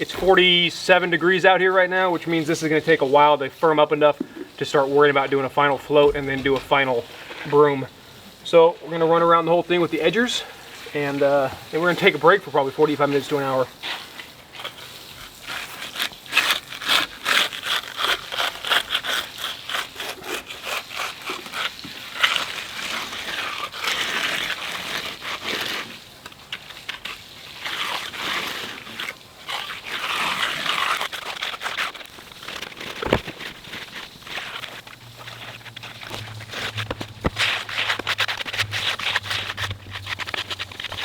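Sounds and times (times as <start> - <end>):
steel edger scraping wet concrete: 0.0 - 41.0.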